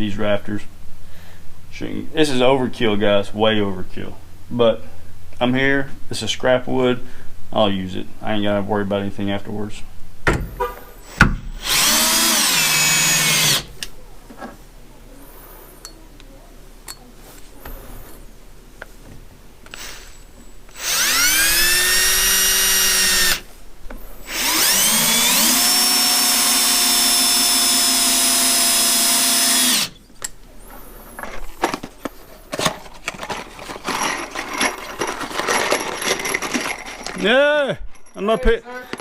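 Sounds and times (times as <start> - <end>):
power drill driving screws: 11.0 - 13.8, 19.7 - 20.1, 20.7 - 23.4, 24.2 - 30.0
knocks and clatter of handling: 31.1 - 39.0.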